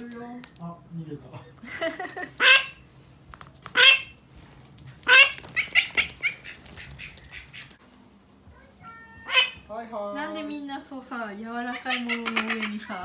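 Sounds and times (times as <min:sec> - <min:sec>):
duck quacking loudly: 0:02.4 - 0:02.8, 0:03.8 - 0:04.2, 0:05.1 - 0:07.7, 0:09.2 - 0:09.6.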